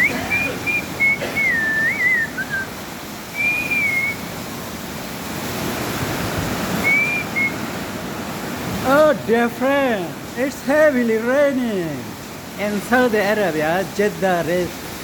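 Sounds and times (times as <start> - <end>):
person whistling: 0.0 - 2.7, 3.3 - 4.3, 6.8 - 7.6
heavy rain falling: 0.0 - 15.0.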